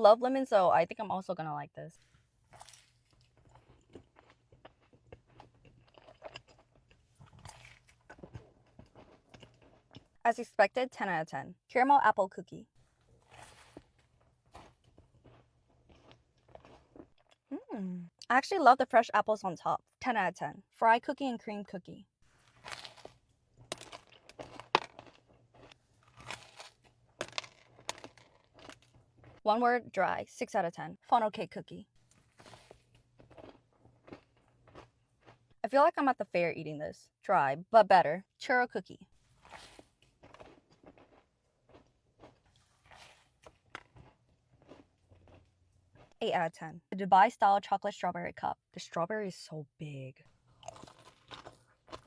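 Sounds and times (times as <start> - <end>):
person chewing a cookie: 2.1 - 10.2, 12.8 - 17.7, 22.3 - 29.4, 32.0 - 35.6, 39.2 - 46.2, 50.3 - 52.0
mouth sounds: 17.5 - 18.3.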